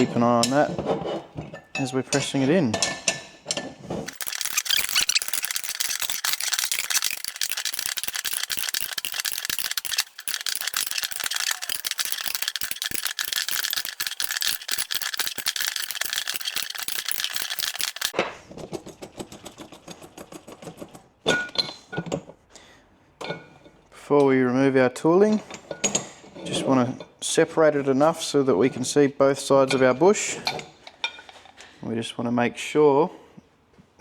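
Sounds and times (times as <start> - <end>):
spanner ratcheting clicks: 4.1 - 18.2.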